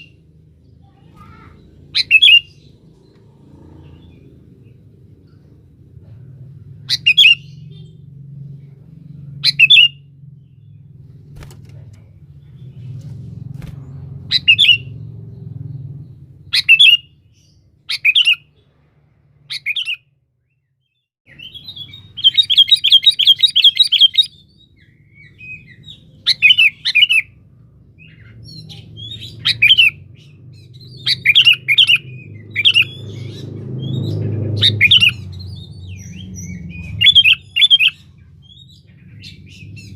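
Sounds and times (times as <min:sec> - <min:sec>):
bird singing whistled phrases: 0:21.3 - 0:27.2, 0:34.6 - 0:38.8.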